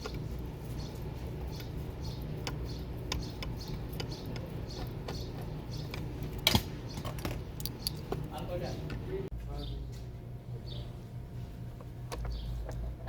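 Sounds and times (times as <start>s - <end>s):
steady low hum: 0.0s - 13.0s
metal tool clicks and taps: 2.4s - 8.2s.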